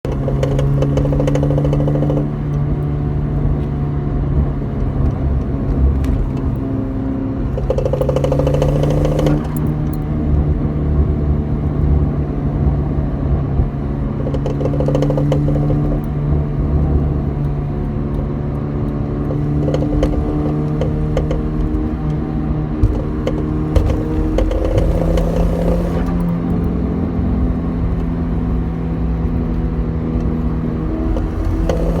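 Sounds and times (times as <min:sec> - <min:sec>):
car engine idling: 0:00.0 - 0:10.7, 0:11.4 - 0:32.0
buzzing rattle: 0:00.1 - 0:02.6, 0:07.5 - 0:10.0, 0:14.2 - 0:16.1, 0:22.8 - 0:26.4, 0:31.0 - 0:32.0.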